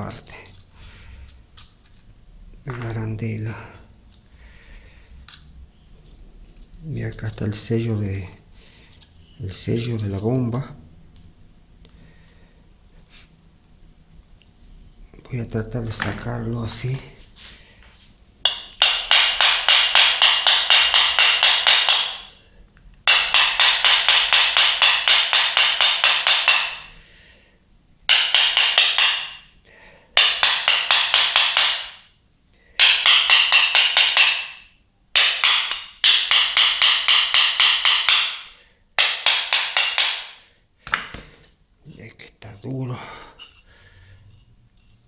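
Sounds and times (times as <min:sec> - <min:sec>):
rapid hammer taps on metal: 0:18.4 - 0:22.3, 0:23.1 - 0:26.9, 0:28.1 - 0:29.5, 0:30.2 - 0:32.1, 0:32.8 - 0:41.2.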